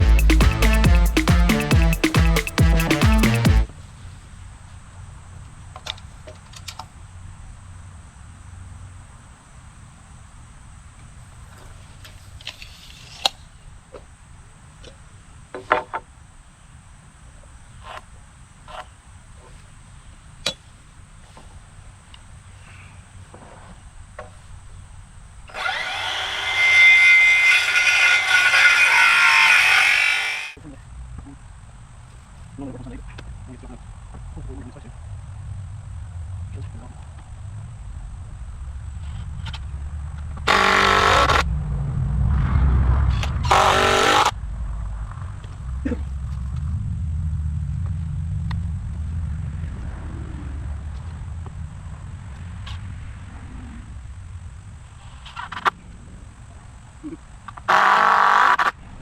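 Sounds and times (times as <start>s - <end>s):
low rumble: 0.0s - 1.9s, 33.3s - 43.7s, 44.3s - 57.1s
music with heavy beat: 0.0s - 3.7s
power saw cutting wood: 25.5s - 30.6s, 40.5s - 41.4s, 43.4s - 44.3s, 57.7s - 58.7s.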